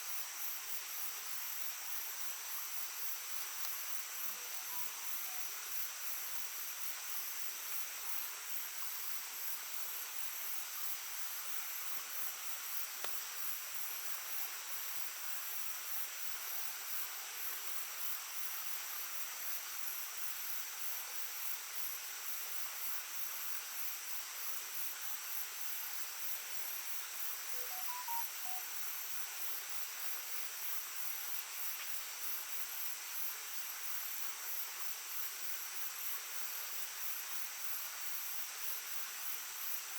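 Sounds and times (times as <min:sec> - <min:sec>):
insects trilling: 0:00.8 - 0:09.5, 0:26.6 - 0:29.5.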